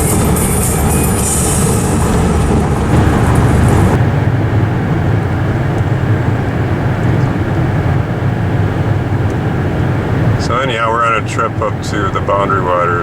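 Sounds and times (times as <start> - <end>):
music: 0.0 - 2.4
car driving low rumble: 0.0 - 13.0.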